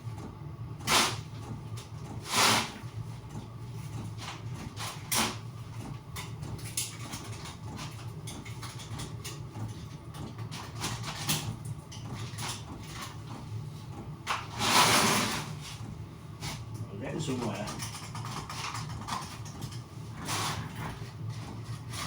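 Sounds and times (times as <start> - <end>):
steady low hum: 11.1 - 22.0.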